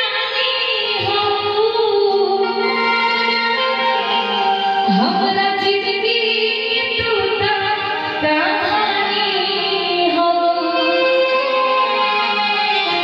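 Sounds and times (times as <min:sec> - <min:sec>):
person singing sliding pitch: 0:04.9 - 0:06.3.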